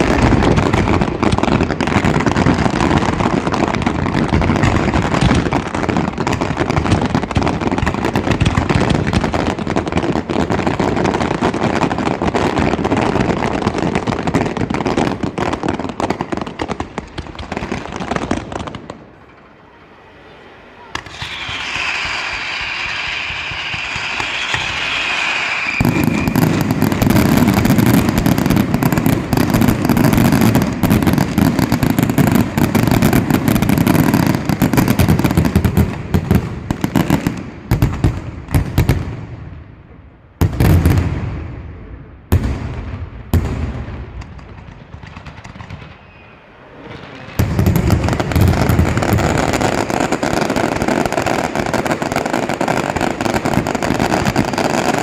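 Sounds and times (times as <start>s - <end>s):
fireworks crackling bangs: 0.0s - 55.0s
firework whistling shriek: 19.1s - 28.9s, 45.4s - 51.4s.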